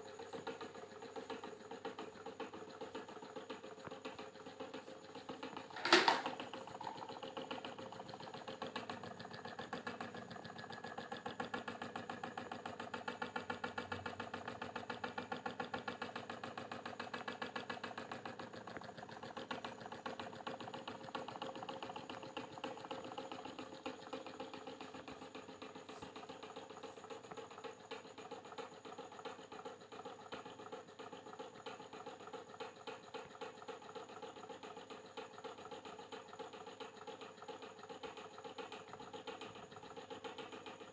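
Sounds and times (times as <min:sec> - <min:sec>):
electric fan humming and ticking: 0:00.0 - 0:29.5.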